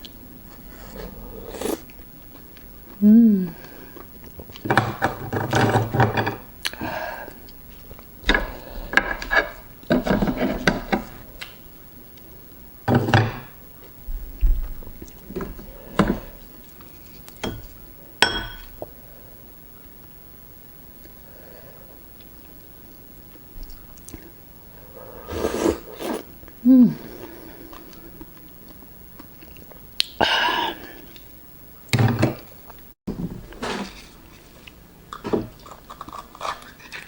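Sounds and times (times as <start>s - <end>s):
eating sounds: 34.7s - 37.0s.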